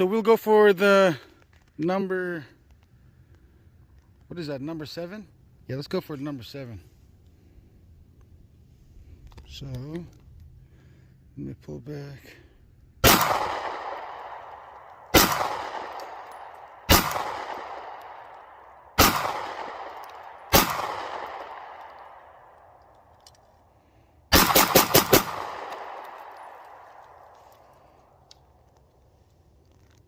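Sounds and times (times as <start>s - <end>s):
pistol shots echoing: 13.0s - 22.9s, 24.3s - 27.6s.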